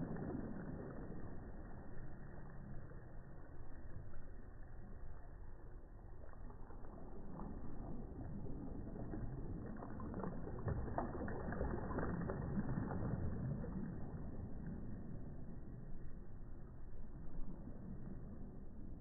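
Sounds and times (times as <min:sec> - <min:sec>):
small waves breaking: 0:06.2 - 0:15.8.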